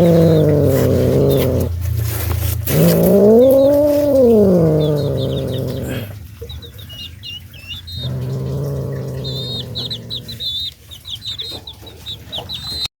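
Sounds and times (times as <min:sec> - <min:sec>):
cat yowling: 0:00.0 - 0:01.8, 0:02.7 - 0:06.2, 0:08.0 - 0:10.4
bird chirps: 0:02.7 - 0:12.9.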